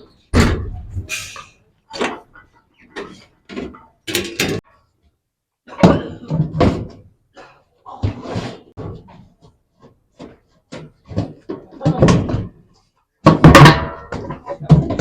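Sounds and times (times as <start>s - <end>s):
knocks and clunks of metal drum: 13.2s - 15.0s.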